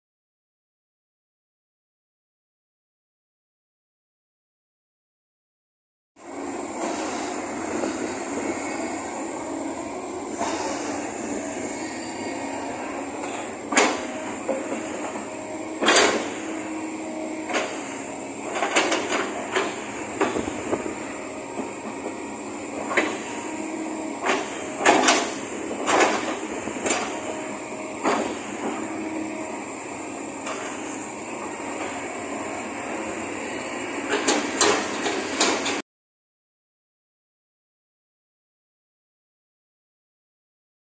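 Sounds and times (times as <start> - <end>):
excavator running: 6.2 - 35.8.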